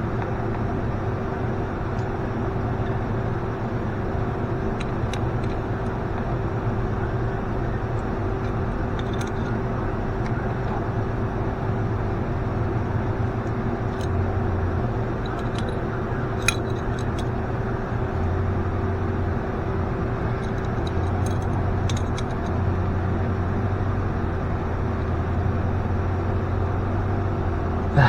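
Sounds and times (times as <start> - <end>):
low mechanical hum: 0.0 - 28.0
sharp metallic clicks: 7.9 - 10.4, 13.3 - 14.4, 15.1 - 17.4, 20.2 - 22.7.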